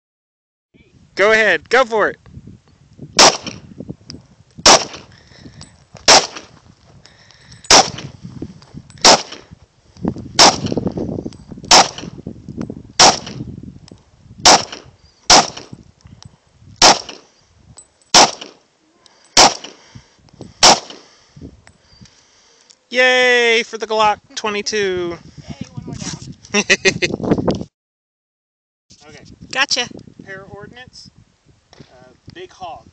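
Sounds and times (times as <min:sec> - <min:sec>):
pistol shots: 0:03.2 - 0:03.6, 0:04.6 - 0:05.1, 0:06.1 - 0:06.5, 0:07.7 - 0:08.0, 0:09.0 - 0:09.4, 0:10.4 - 0:10.8, 0:11.7 - 0:12.2, 0:13.0 - 0:13.4, 0:14.4 - 0:15.7, 0:16.8 - 0:17.2, 0:18.1 - 0:18.6, 0:19.4 - 0:19.8, 0:20.6 - 0:21.1.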